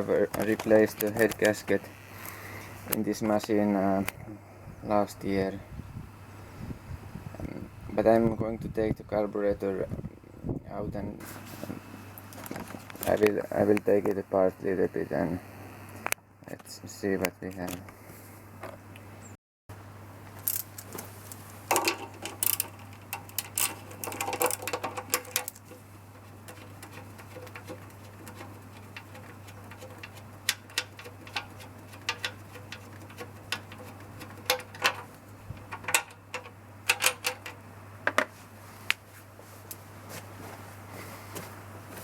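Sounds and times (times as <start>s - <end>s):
hand tools clicking on metal: 21.7s - 37.6s.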